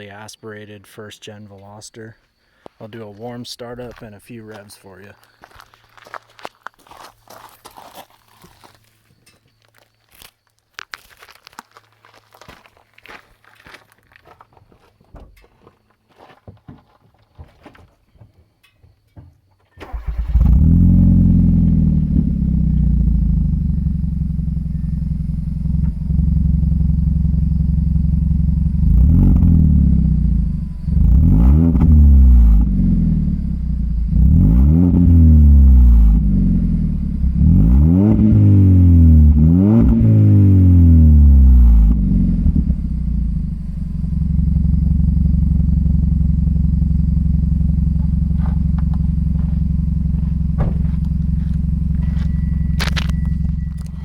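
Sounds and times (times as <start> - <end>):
car engine idling and revving: 19.8 - 54.0.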